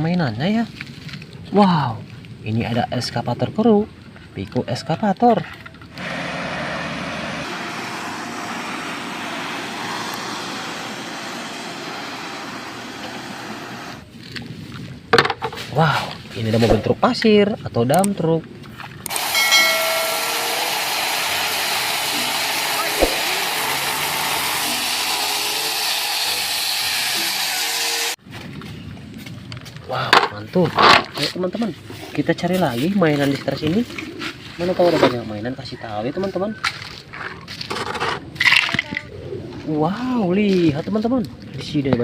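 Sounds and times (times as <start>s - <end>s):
steady hissing: 6.0s - 14.0s.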